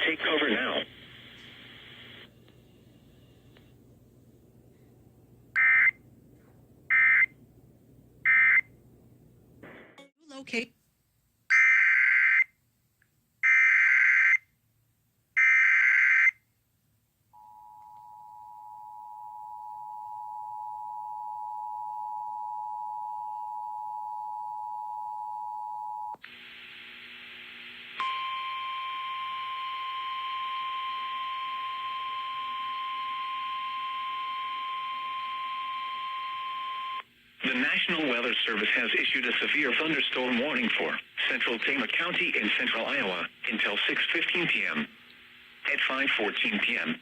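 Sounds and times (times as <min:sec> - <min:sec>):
hissy radio audio: 0:00.0 - 0:02.3, 0:37.4 - 0:47.0.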